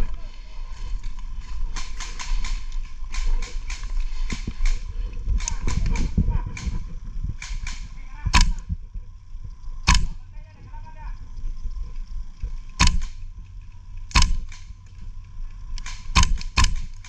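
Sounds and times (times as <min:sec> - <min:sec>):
faint clicks: 0:01.0 - 0:10.2, 0:10.8 - 0:17.0
airsoft rifle shots: 0:01.7 - 0:04.8, 0:05.4 - 0:06.8, 0:07.4 - 0:08.7, 0:09.8 - 0:10.2, 0:12.8 - 0:13.3, 0:14.1 - 0:14.7, 0:15.8 - 0:17.0.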